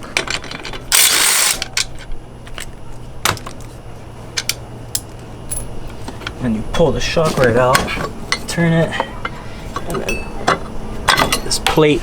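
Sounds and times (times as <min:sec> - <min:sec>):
rapid ratchet clicking: 0:00.9 - 0:01.7.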